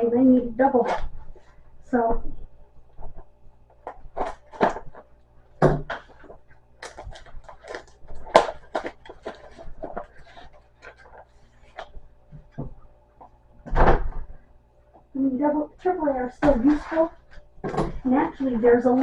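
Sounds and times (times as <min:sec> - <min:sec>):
items clattering: 0:03.0 - 0:14.4, 0:16.2 - 0:19.0
packaging rustling and clicking: 0:05.8 - 0:12.0.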